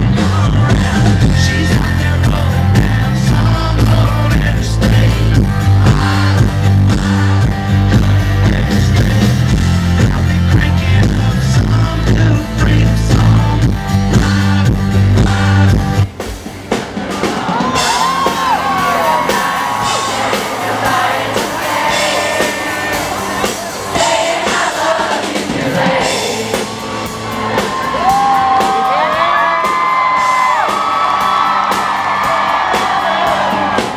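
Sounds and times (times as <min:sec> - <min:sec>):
country band playing loudly: 0:00.0 - 0:33.9
crowd cheering and whistling: 0:16.5 - 0:33.9.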